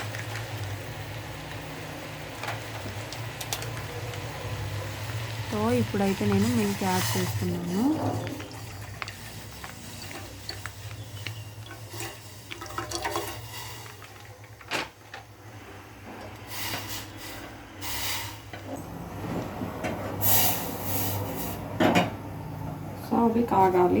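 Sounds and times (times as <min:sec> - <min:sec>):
kitchen utensils clinking: 0:05.5 - 0:15.3
milk pouring into a pan: 0:08.1 - 0:14.6.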